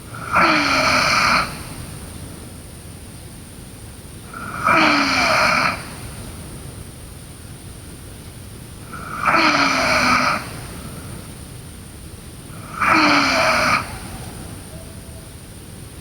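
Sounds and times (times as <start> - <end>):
girl snoring: 0.2 - 1.5, 4.3 - 5.8, 8.9 - 10.6, 12.6 - 14.2.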